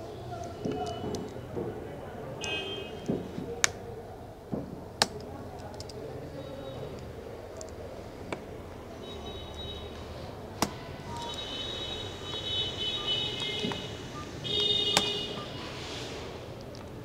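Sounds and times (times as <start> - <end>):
plastic clicks and snaps: 2.4 - 3.9, 4.6 - 6.1, 6.9 - 8.5, 10.5 - 11.5, 16.6 - 17.0.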